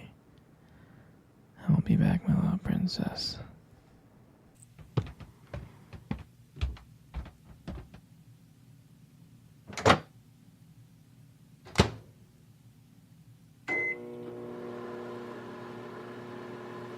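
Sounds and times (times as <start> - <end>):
footsteps walking: 4.5 - 8.1
door clunks: 11.6 - 12.1.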